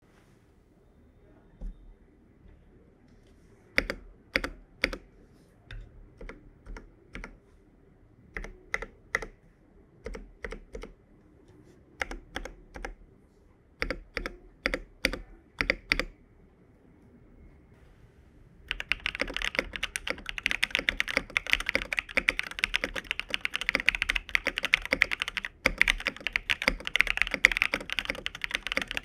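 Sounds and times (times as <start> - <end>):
mechanical keyboard typing: 3.8 - 5.1, 6.2 - 7.4, 8.3 - 9.4, 10.0 - 11.0, 12.0 - 13.0, 13.8 - 16.1, 18.7 - 29.0.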